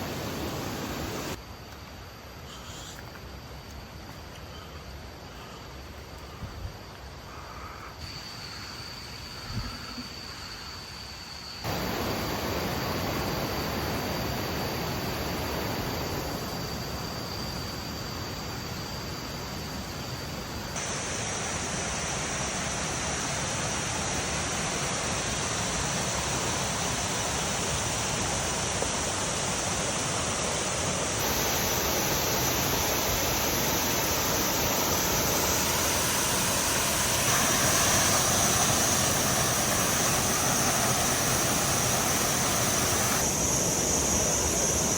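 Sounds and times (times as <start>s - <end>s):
waterfall rushing over rock: 0.0s - 1.4s, 11.7s - 16.4s, 20.8s - 44.9s.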